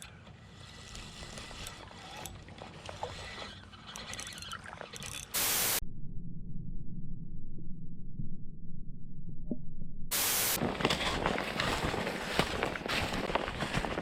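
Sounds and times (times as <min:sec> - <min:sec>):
fishing reel drag clicking: 0:00.0 - 0:05.8
static hiss burst: 0:05.4 - 0:05.8, 0:10.1 - 0:10.6
low hum: 0:05.4 - 0:12.1.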